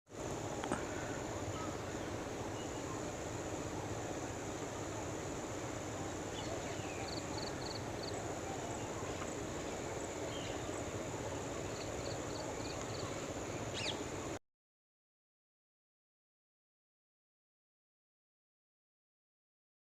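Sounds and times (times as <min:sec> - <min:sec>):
high insect drone: 0:00.1 - 0:14.4
small birds chirping: 0:00.5 - 0:14.4
bird sweeping call: 0:00.8 - 0:03.1, 0:12.0 - 0:14.1.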